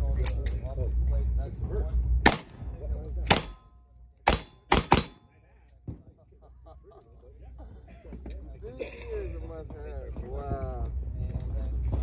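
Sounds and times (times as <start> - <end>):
gunshots with metallic ring: 2.2 - 5.6.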